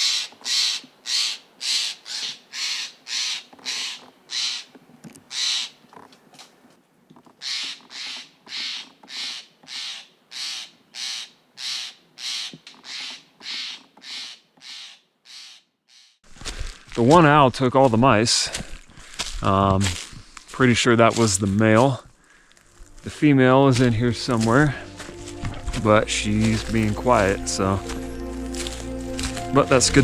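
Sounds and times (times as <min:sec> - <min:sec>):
jays harsh scolding calls: 0:00.0 - 0:05.8, 0:07.4 - 0:16.2.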